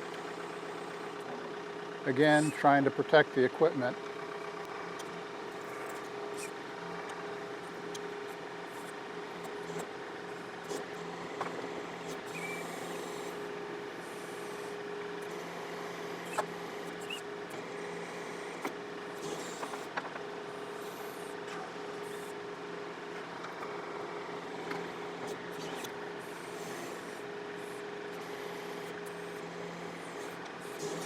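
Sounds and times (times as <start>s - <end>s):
tractor diesel engine idling: 0.0s - 10.6s.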